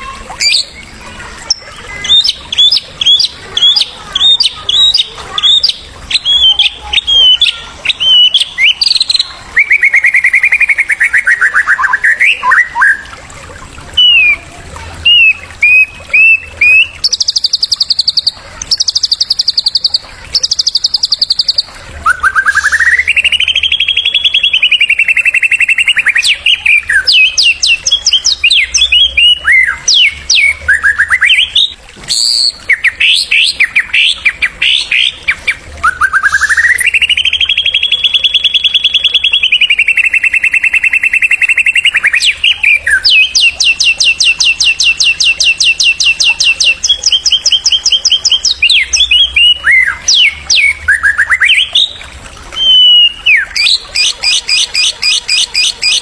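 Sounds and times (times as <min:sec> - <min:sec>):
songbird fast high trilling: 0:14.0 - 0:14.4, 0:15.0 - 0:56.0.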